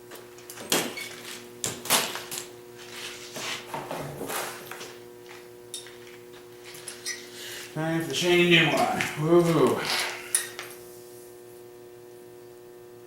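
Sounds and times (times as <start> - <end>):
faint steady hum: 4.3 - 13.0.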